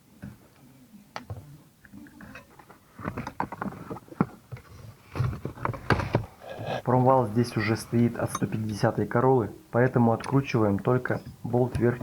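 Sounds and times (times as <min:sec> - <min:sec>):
plastic parts clicking and knocking: 0:02.2 - 0:06.3.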